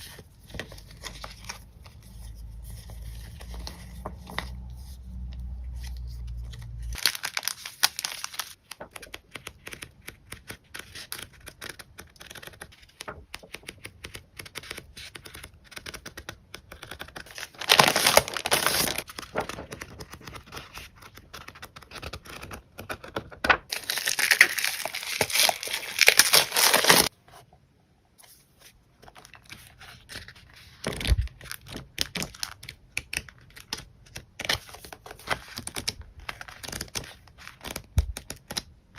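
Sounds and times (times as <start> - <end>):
paper crinkling and tearing: 5.8 - 13.4, 16.8 - 22.6, 23.4 - 27.1, 34.4 - 38.6.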